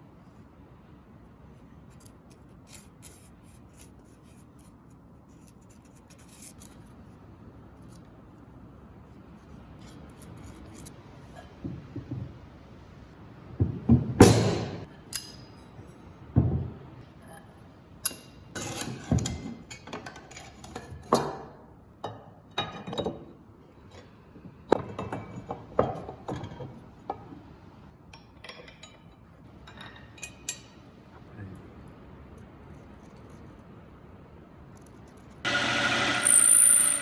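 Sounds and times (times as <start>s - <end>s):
power tool whining: 35.5s - 37.0s.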